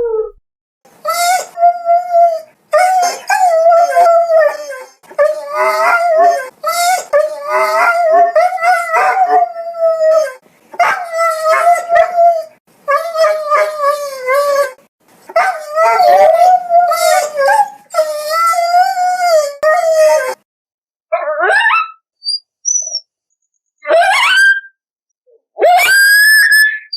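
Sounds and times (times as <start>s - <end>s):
dog whining howls: 1.0s - 14.8s, 15.4s - 20.4s.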